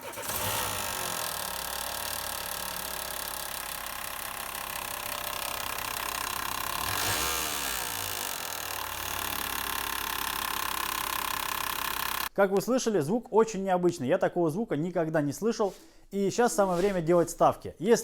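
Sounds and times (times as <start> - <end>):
car engine running: 0.0 - 12.3
fast knocking rattle from belt drive: 0.0 - 12.3.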